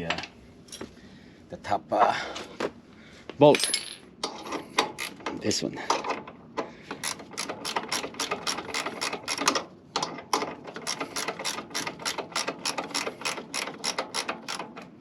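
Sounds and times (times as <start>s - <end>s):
ratchet wrench clicking: 7.0s - 9.6s, 10.8s - 14.7s.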